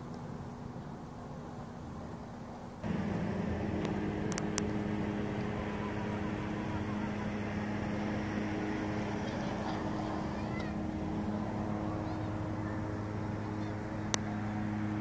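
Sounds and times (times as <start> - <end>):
steady mechanical hum: 0.0 - 15.0.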